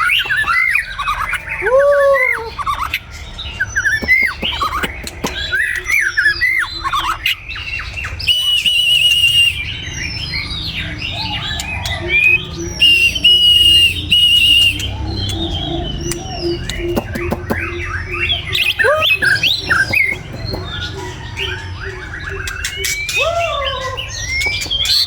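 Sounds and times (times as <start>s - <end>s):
buzzy pulsing bird phrases: 0.0s - 25.0s
bird singing whistles: 8.0s - 10.4s, 11.3s - 20.2s.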